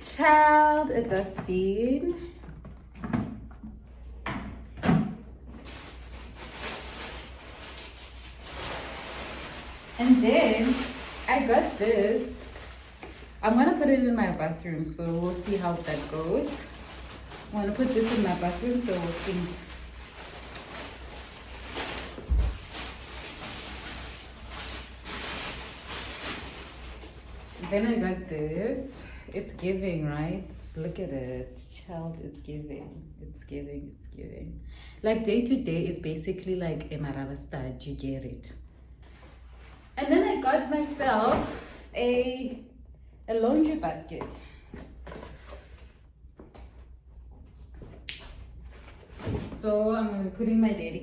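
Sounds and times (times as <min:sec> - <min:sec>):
rustling of shopping items: 0:05.2 - 0:31.6, 0:38.9 - 0:42.4, 0:43.3 - 0:51.0.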